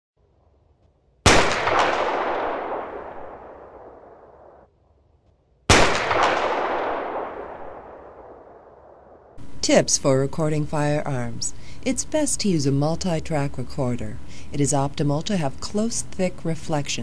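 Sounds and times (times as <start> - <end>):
gunshots echoing: 1.2 - 4.6, 5.7 - 9.4.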